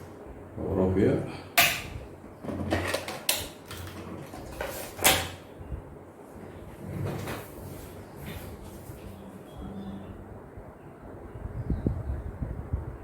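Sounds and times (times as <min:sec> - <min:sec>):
faint low hum: 0:05.4 - 0:13.0.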